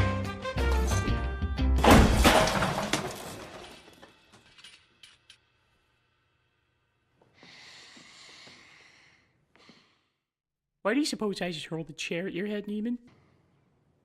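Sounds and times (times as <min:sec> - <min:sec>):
chair crashing: 0:01.8 - 0:04.0.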